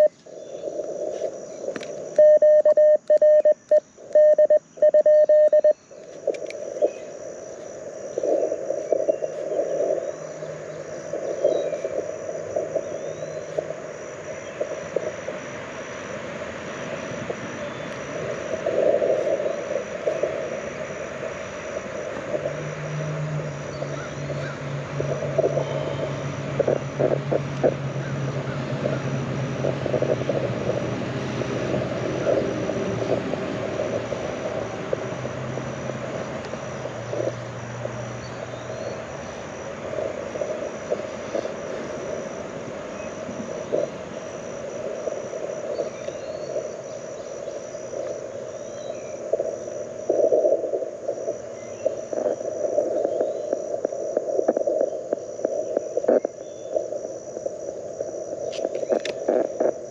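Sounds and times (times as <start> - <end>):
morse code tones: 0.0 - 0.2, 2.2 - 5.8
radio band hiss: 0.0 - 59.9
low engine hum: 21.1 - 45.8.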